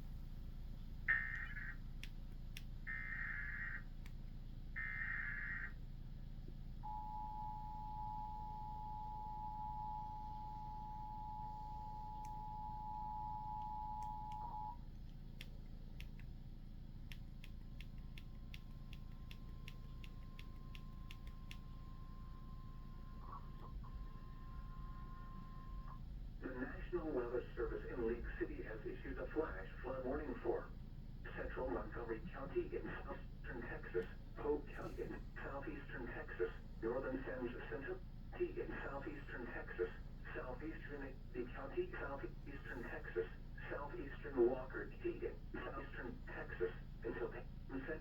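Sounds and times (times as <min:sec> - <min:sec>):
faint steady tone: 0:00.0 - 0:15.2, 0:16.5 - 0:48.0
scattered clicks: 0:01.3 - 0:02.8, 0:13.6 - 0:16.4, 0:17.0 - 0:21.8
two-tone attention signal: 0:06.9 - 0:14.8.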